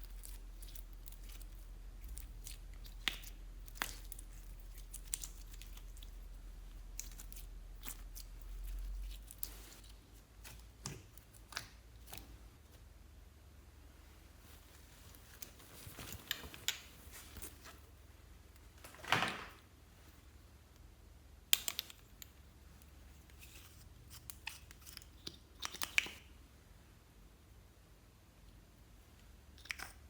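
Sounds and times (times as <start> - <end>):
slime clicks and crackles: 0.0 - 12.4.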